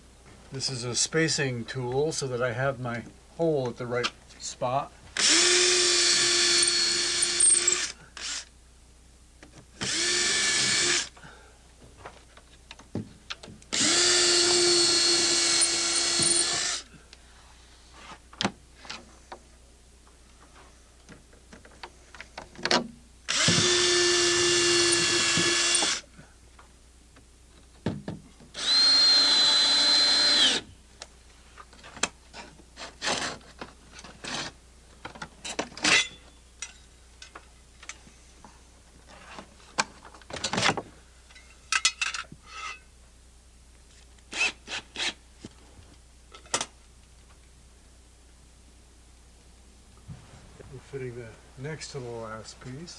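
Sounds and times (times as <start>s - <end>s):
power drill running: 5.2s - 8.5s, 9.8s - 11.2s, 13.7s - 16.9s, 23.3s - 26.1s, 28.6s - 30.7s.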